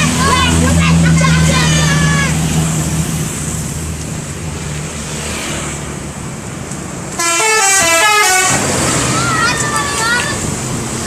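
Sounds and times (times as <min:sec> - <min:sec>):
bus engine rumble: 0:00.0 - 0:11.0
road noise: 0:00.0 - 0:11.0
multi-tone bus horn tune: 0:07.2 - 0:09.0.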